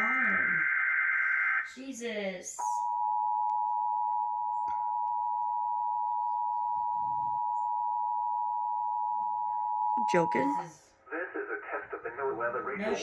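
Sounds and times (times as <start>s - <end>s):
electronic alarm tone: 2.6s - 10.7s.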